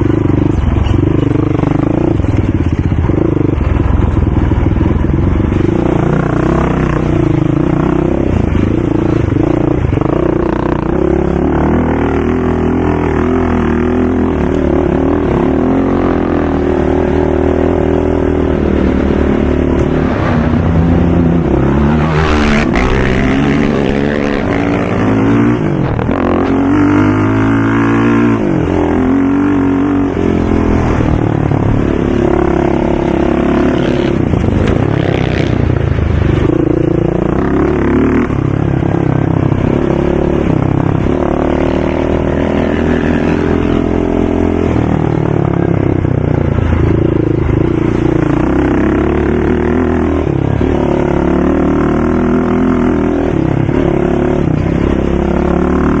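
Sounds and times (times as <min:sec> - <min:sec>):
atv engines revving: 0:00.0 - 0:56.0.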